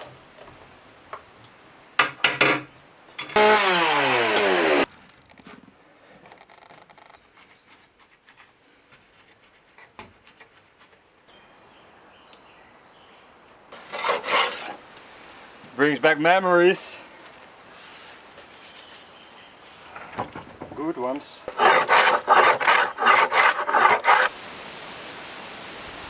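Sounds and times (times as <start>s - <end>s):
chainsaw running: 3.3s - 4.9s, 21.5s - 24.3s
faint knocks and rustles: 4.9s - 11.1s, 19.7s - 22.2s.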